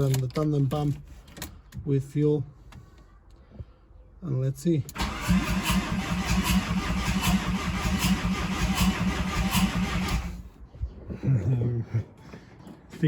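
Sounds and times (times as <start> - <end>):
starter motor cranking diesel engine: 4.9 - 10.5.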